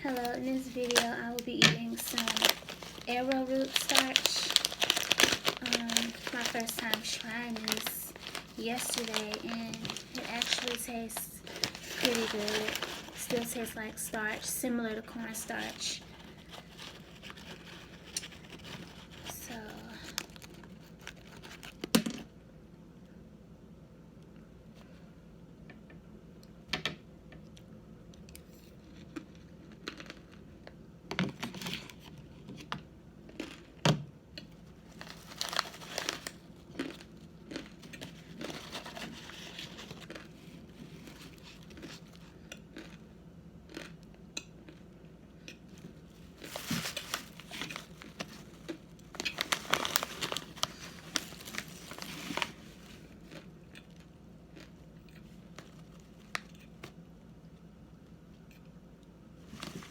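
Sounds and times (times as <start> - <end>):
packaging crinkling and rustling: 0.0 - 22.3, 31.2 - 32.7, 34.6 - 42.9, 45.7 - 54.0, 54.6 - 57.0, 59.4 - 59.9.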